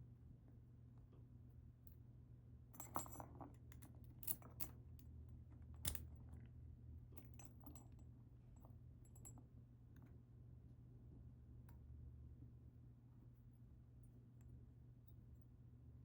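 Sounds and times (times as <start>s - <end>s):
faint steady hum: 0.0s - 16.0s
metallic clicks of lock parts: 5.8s - 6.1s.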